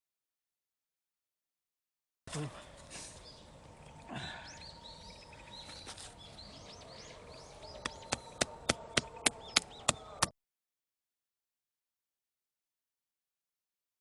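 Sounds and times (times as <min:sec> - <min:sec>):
small birds chirping: 0:02.3 - 0:10.3.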